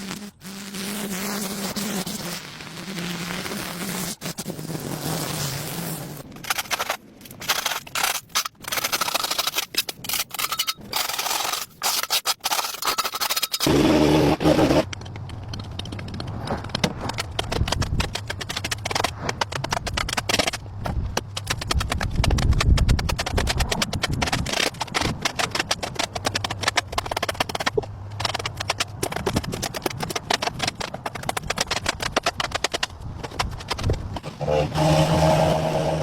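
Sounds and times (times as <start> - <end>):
rapid irregular clicking and tapping: 14.8 - 34.3.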